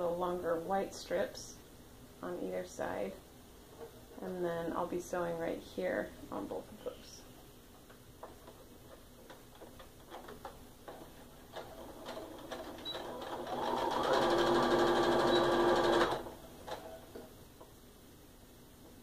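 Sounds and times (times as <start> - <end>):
sewing machine stitching: 10.1 - 17.0.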